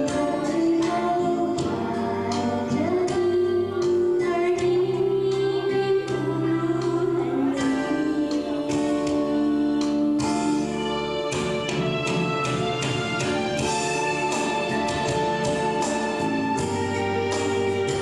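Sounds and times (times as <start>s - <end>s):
person singing: 0.0s - 11.4s
instrumental accompaniment: 0.0s - 18.0s.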